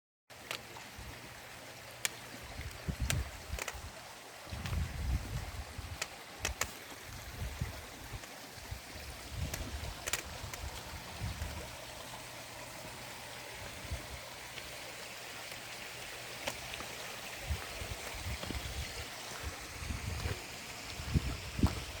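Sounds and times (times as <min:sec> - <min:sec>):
stream water flowing: 0:00.3 - 0:22.0
faint clicks: 0:02.0 - 0:03.9, 0:06.0 - 0:06.8.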